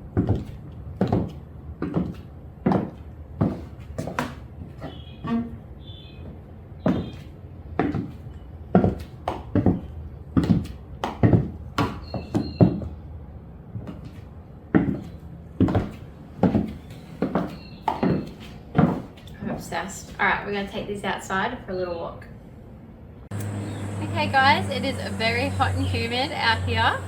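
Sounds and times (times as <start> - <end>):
high heels stepping on floor: 0.1 - 4.4, 13.8 - 19.2.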